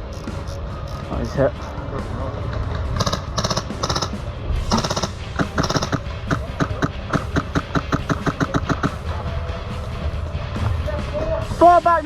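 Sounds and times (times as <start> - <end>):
airsoft guns firing: 2.8 - 9.1.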